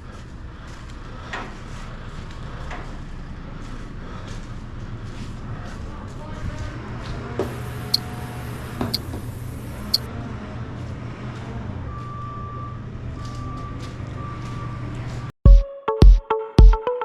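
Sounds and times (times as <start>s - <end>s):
small gasoline engine running: 7.4s - 10.1s.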